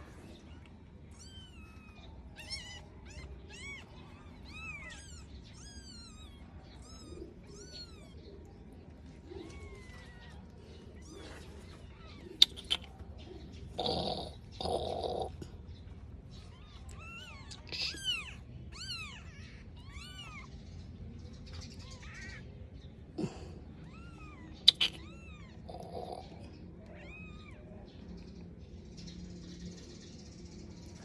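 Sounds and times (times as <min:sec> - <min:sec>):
kitten mewing: 0:12.2 - 0:12.9, 0:13.8 - 0:15.4, 0:23.2 - 0:26.4.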